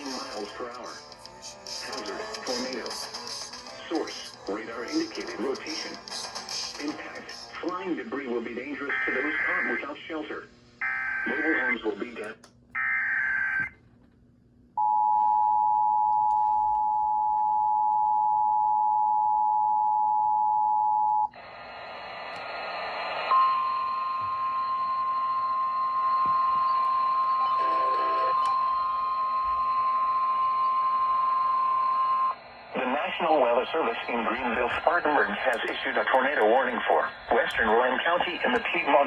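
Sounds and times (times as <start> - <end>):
radio static: 1.8 - 13.7, 32.3 - 39.0
steady warning tone: 23.2 - 39.0.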